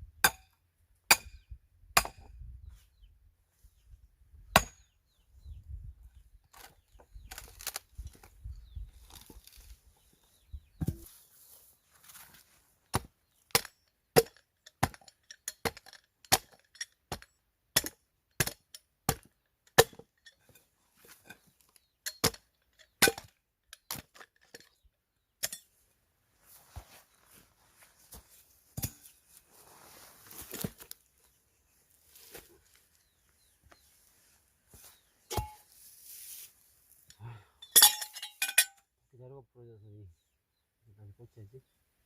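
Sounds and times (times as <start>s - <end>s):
scuffing rustle: 26.4s - 31.0s.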